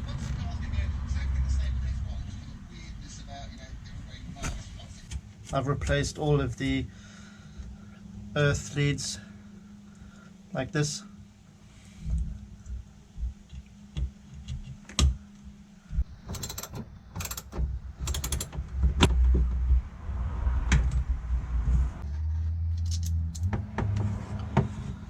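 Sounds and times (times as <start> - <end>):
low steady hum: 0.0 - 25.0
hand tools clicking on metal: 16.2 - 18.6
ratcheting clicks: 16.2 - 18.6.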